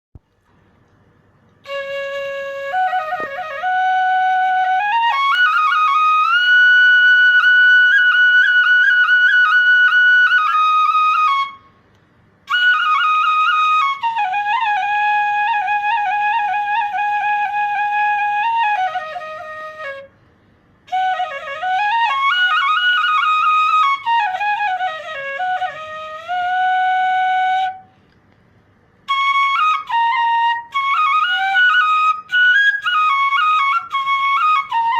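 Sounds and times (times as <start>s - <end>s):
bamboo flute melody: 1.6s - 11.8s, 12.4s - 20.2s, 20.8s - 28.0s, 29.0s - 34.9s.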